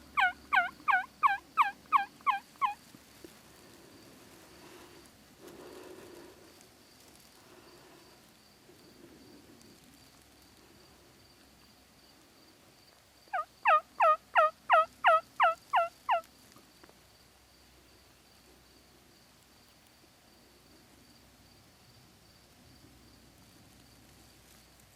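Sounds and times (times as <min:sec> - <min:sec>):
loud turkey yelps: 0:00.1 - 0:02.8, 0:13.3 - 0:16.3.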